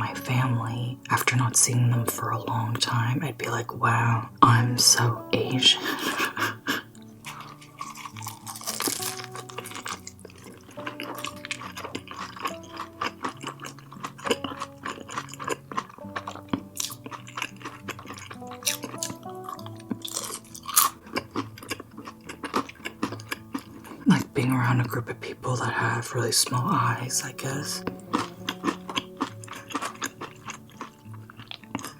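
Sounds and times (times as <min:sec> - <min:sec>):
soft background music: 0:00.0 - 0:31.9
chewing and wet mouth sounds: 0:06.7 - 0:31.9.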